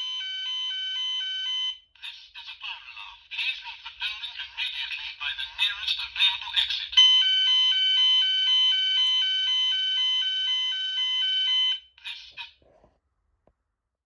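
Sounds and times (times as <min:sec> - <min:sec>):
two-tone fire alarm: 0:00.0 - 0:01.9, 0:07.0 - 0:12.4.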